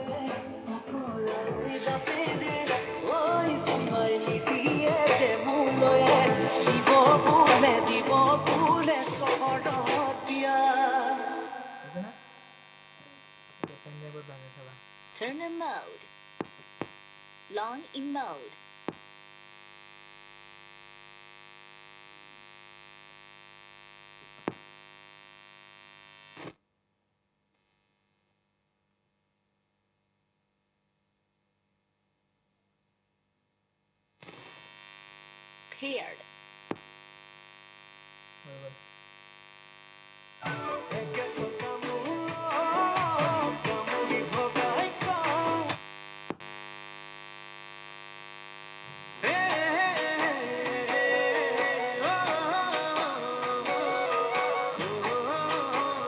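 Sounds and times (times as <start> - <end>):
song through a loudspeaker: 0.0 - 11.9, 40.5 - 45.8, 49.2 - 56.0
electrical hum-buzz: 0.0 - 26.7, 30.0 - 56.0.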